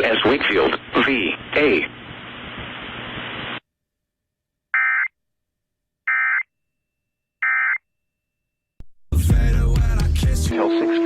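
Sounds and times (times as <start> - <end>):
radio broadcast hiss: 0.0 - 3.6.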